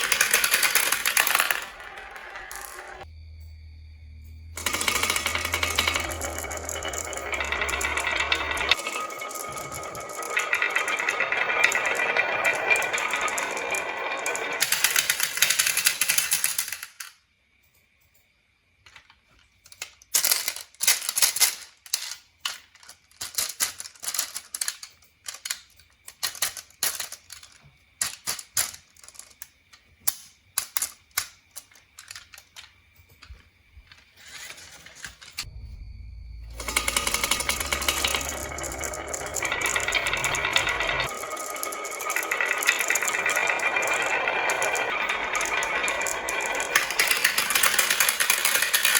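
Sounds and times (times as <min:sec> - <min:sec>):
marbles rolling and clacking: 0:00.0 - 0:03.1, 0:04.5 - 0:17.2, 0:18.8 - 0:35.6, 0:36.3 - 0:48.9
low hum: 0:01.5 - 0:14.2, 0:35.4 - 0:47.1.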